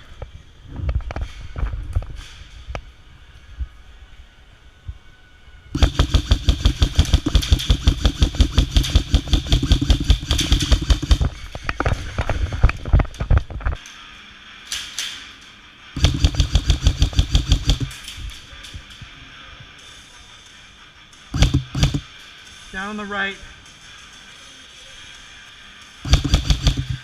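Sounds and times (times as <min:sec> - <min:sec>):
airsoft gun firing full auto: 0:05.8 - 0:11.4, 0:16.0 - 0:18.1, 0:21.4 - 0:22.0, 0:26.1 - 0:27.0.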